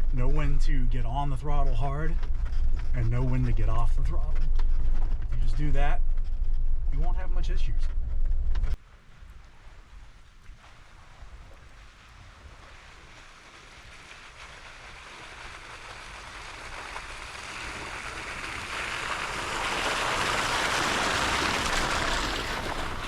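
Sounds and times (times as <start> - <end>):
tyres splashing through slush: 8.8 - 23.0.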